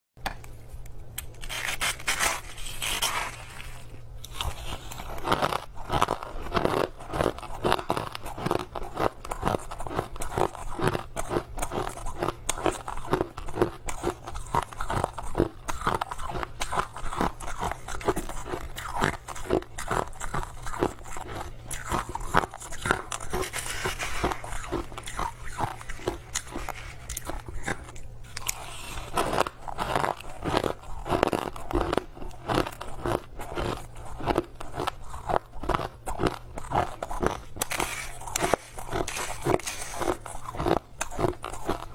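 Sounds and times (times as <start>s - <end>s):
crushed ice crunching: 15.2s - 41.9s.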